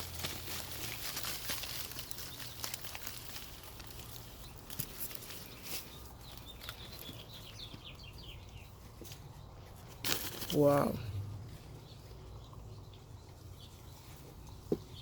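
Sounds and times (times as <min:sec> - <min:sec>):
plastic bag crackling: 0:00.0 - 0:07.1
hands rummaging through potting soil: 0:00.0 - 0:12.5.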